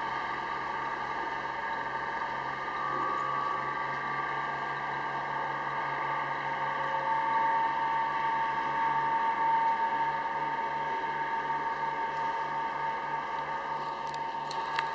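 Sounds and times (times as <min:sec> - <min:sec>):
boat engine droning with whine: 0:00.0 - 0:14.9.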